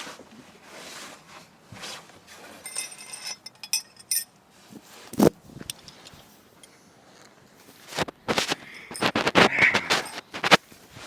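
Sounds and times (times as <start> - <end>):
metal parts clinking and rattling: 2.6 - 4.3.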